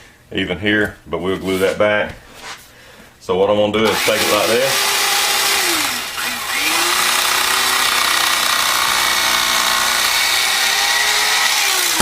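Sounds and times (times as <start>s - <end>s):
electric knife motor cutting foam: 3.9s - 12.0s.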